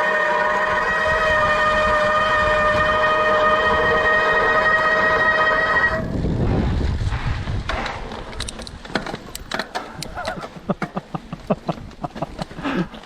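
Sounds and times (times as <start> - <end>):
bike brake squealing: 0.0 - 6.1, 9.5 - 10.6
low rumble: 1.0 - 8.5
sharp clicks: 7.7 - 11.1.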